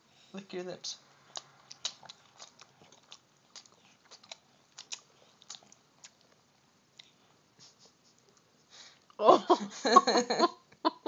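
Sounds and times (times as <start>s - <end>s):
child's lip smacks while eating: 1.3s - 6.4s.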